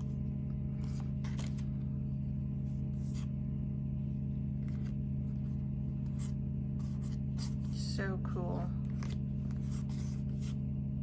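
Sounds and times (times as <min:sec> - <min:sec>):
cards tapping and rustling: 0:00.7 - 0:01.8, 0:08.8 - 0:10.6.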